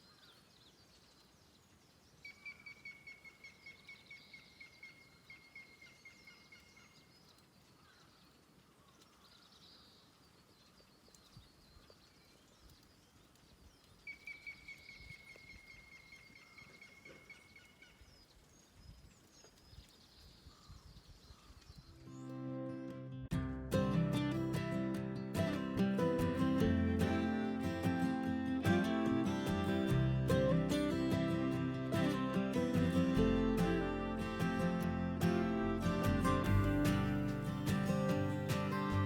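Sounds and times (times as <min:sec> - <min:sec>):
small birds chirping faintly: 0:00.0 - 0:39.0.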